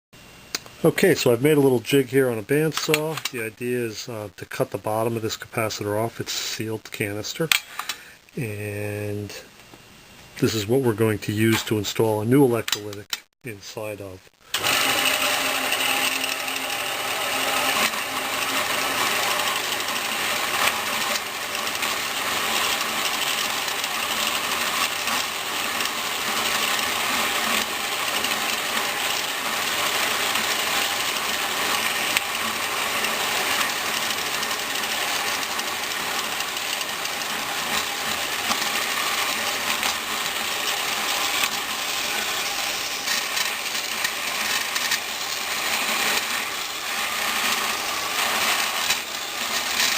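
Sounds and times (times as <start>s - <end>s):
bandsaw cutting metal: 14.5s - 49.9s.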